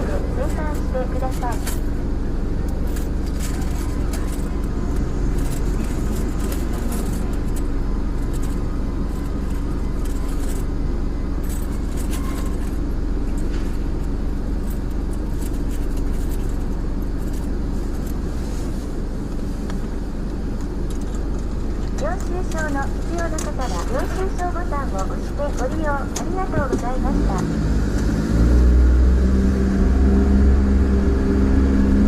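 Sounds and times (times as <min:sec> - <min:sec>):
car engine humming: 0:00.0 - 0:32.0.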